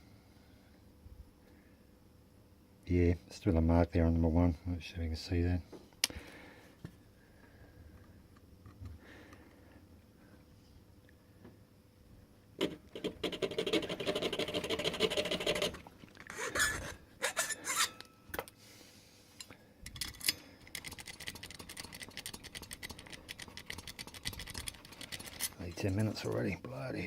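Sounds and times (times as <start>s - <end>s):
hand file rasping on metal key: 13.2s - 18.0s, 21.0s - 26.3s.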